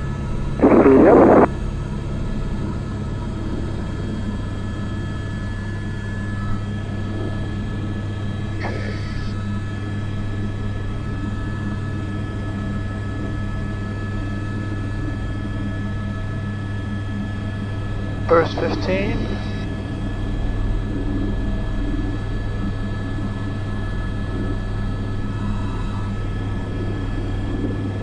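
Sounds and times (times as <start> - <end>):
helicopter engine and rotors drone: 0.0 - 28.0
faint high whine: 0.5 - 1.5, 4.9 - 12.5, 16.5 - 19.8.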